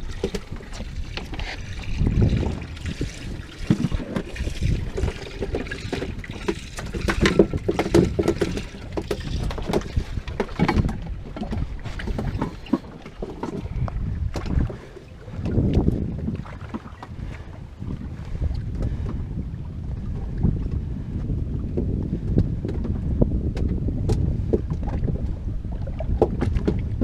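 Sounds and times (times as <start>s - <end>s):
water sloshing against boat hull: 0.0s - 27.0s
wind buffeting microphone: 0.0s - 27.0s
knocks and clatter on board: 0.1s - 15.9s, 26.1s - 27.0s.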